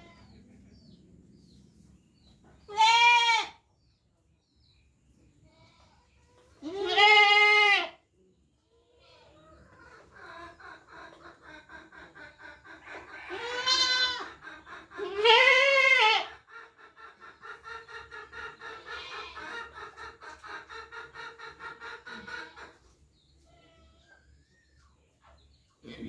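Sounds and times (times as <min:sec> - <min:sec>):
goat bleating: 0:02.7 - 0:03.6, 0:06.6 - 0:08.0, 0:13.2 - 0:14.3, 0:15.0 - 0:16.3.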